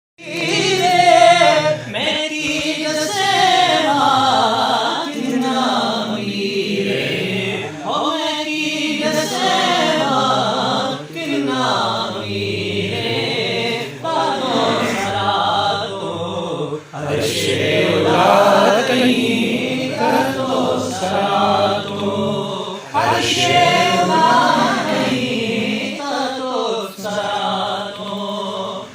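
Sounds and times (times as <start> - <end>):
voices chanting devotional song: 0.2 - 28.9.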